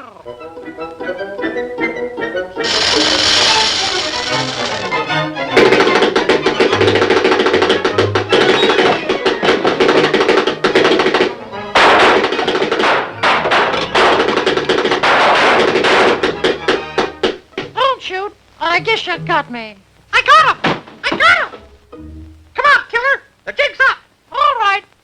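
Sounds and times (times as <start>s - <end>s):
fast cartoon music: 0.3s - 12.4s.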